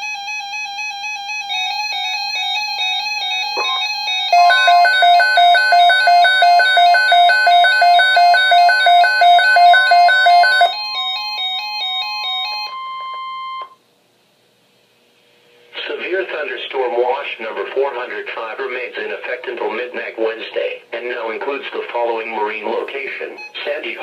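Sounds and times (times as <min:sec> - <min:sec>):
steady high tone: 0:03.4 - 0:10.8
electronic chime alert melody: 0:03.5 - 0:10.8.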